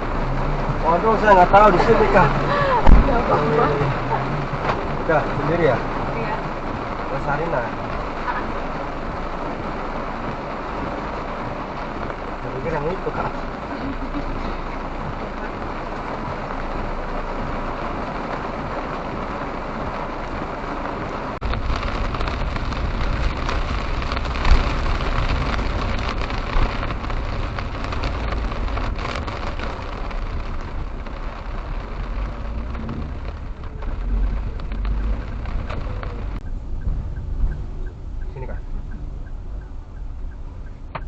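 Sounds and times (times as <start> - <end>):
car road noise: 0.0 - 41.0.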